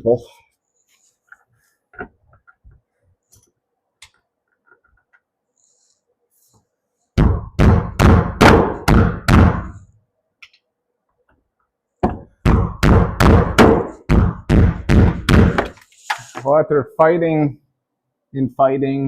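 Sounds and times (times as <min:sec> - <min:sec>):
heavy knocks: 0:12.0 - 0:15.8.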